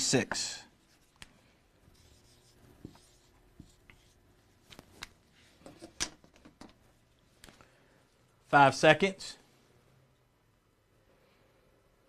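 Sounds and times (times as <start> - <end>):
light scratching of writing: 0.8 - 5.9.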